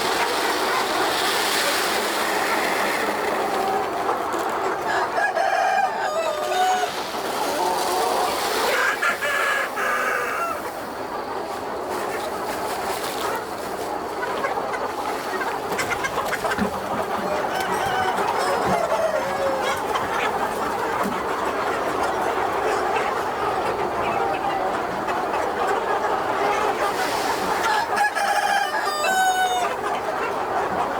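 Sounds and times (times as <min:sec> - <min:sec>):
chickens clucking: 0:00.0 - 0:30.9
rooster crowing: 0:04.9 - 0:07.0, 0:17.3 - 0:19.8, 0:27.7 - 0:29.8.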